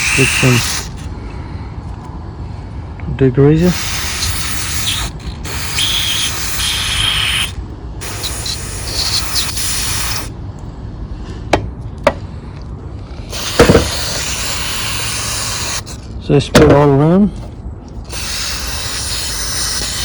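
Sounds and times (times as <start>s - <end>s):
aerosol spray hissing: 0.0s - 1.1s, 3.7s - 10.3s, 13.3s - 16.0s, 18.1s - 20.0s.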